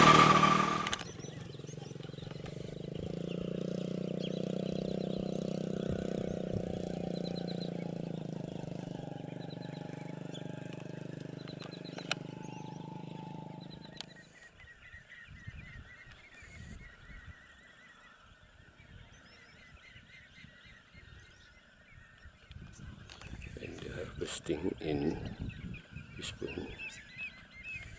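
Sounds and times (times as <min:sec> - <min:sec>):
engine running steadily: 0:00.0 - 0:14.5
small birds chirping: 0:00.0 - 0:27.9.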